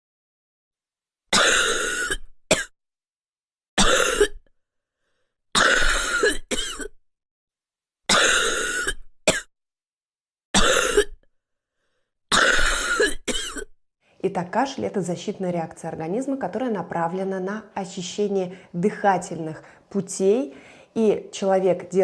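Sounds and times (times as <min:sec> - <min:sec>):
child wet coughing: 0:05.6 - 0:06.9, 0:12.3 - 0:13.7.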